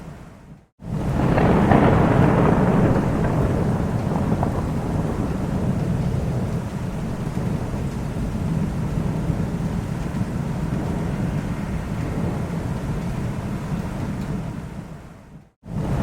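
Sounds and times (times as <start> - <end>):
faint rain hiss: 0.0 - 16.0
rolling thunder rumble: 0.8 - 16.0.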